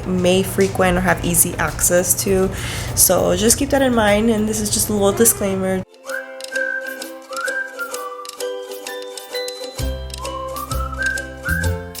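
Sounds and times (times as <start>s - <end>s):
whistled melody: 5.9s - 12.0s.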